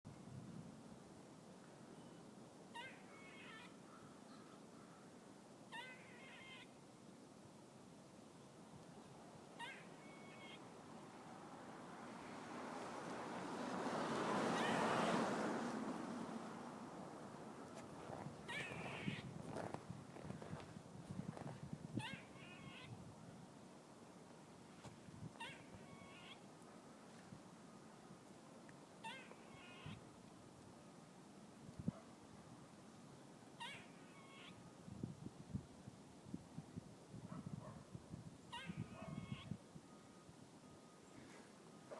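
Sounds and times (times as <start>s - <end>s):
squirrel calling: 2.7s - 4.9s, 5.7s - 6.8s, 9.6s - 10.7s, 14.6s - 14.9s, 18.4s - 19.3s, 22.0s - 23.0s, 25.4s - 26.5s, 29.0s - 30.0s, 33.6s - 34.6s, 38.5s - 39.6s.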